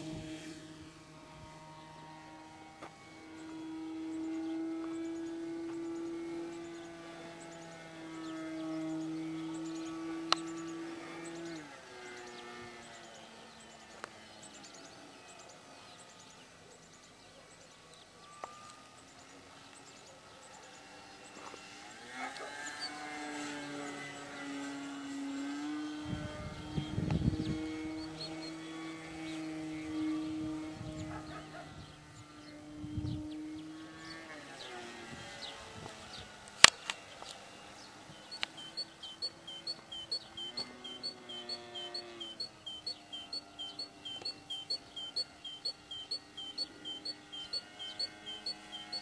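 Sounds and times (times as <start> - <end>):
model airplane motor humming: 0.0 - 17.2, 18.2 - 31.1, 38.0 - 49.0
small birds chirping: 1.2 - 36.2, 37.1 - 49.0
short high falling chirps: 38.6 - 49.0.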